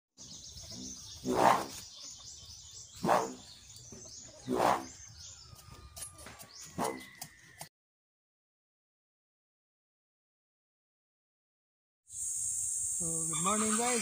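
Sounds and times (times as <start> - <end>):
birds chirping: 0.2 - 7.7, 12.1 - 14.0.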